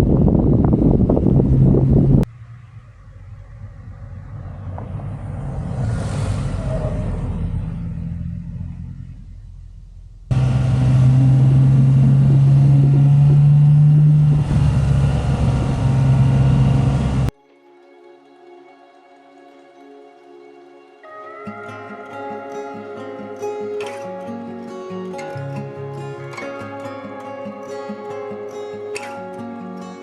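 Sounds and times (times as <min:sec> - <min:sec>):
truck engine rumble: 0:00.0 - 0:17.3
hiss: 0:05.2 - 0:07.7.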